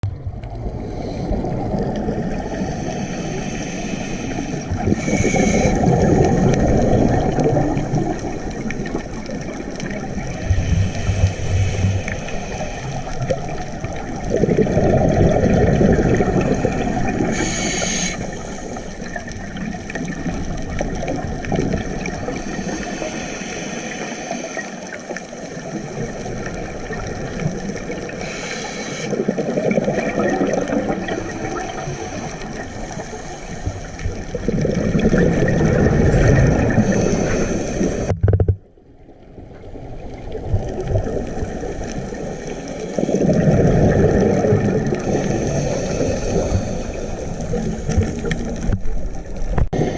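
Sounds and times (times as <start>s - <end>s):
exhaled bubbles rumbling: 0.0s - 23.3s, 25.2s - 28.4s, 29.0s - 49.9s
steady underwater wash: 0.0s - 49.9s
regulator inhalation hiss: 2.5s - 5.8s, 10.4s - 13.6s, 17.2s - 19.2s, 22.3s - 25.2s, 28.0s - 29.1s, 31.5s - 34.1s, 36.8s - 38.1s, 45.0s - 47.5s.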